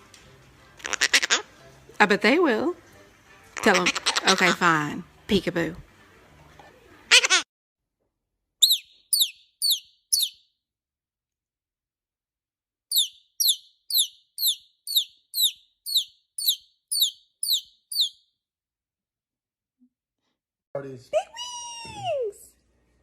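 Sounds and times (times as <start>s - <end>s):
parrot chirping: 0.8s - 1.5s, 3.6s - 4.7s, 7.1s - 7.4s, 8.6s - 10.4s, 12.9s - 18.3s.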